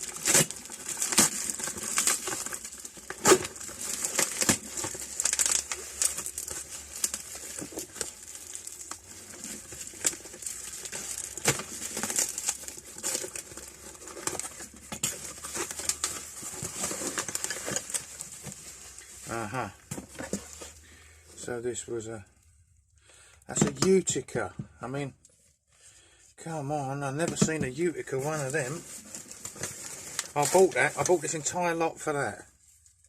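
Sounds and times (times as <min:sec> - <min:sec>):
packaging crinkling and rustling: 0:00.0 - 0:21.0, 0:27.2 - 0:31.8.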